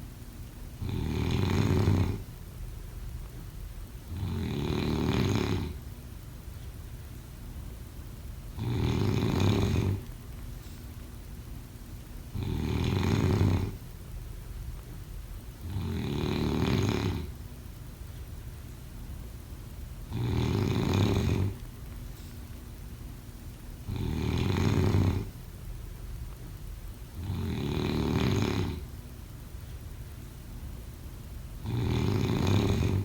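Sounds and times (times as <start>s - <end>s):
person snoring: 0.8s - 2.2s, 4.1s - 5.8s, 8.6s - 10.0s, 12.3s - 13.8s, 15.6s - 17.3s, 20.1s - 21.6s, 23.9s - 25.3s, 27.2s - 28.8s, 31.6s - 33.0s.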